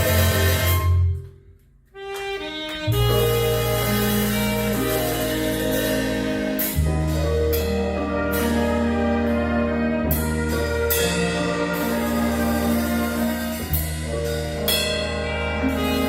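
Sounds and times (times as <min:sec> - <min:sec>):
cymbal crash: 0:00.0 - 0:01.0
big band held chords: 0:00.0 - 0:01.2, 0:02.0 - 0:16.0
deep bass: 0:00.0 - 0:01.4, 0:02.9 - 0:16.0.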